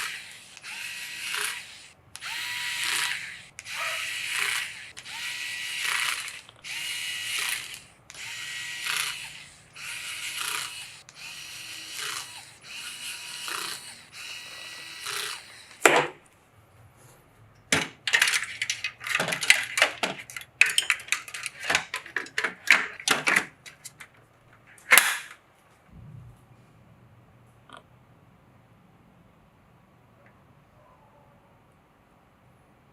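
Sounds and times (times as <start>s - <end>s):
screwdriver driving screws: 0.0s - 16.0s
hardware clicks and taps: 17.6s - 25.4s.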